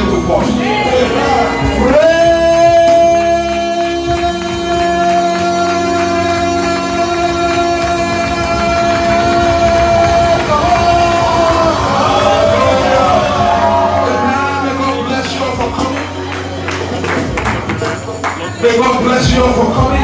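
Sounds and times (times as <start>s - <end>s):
held worship chords: 0.0s - 20.0s
voices singing: 0.4s - 17.1s, 18.0s - 20.0s.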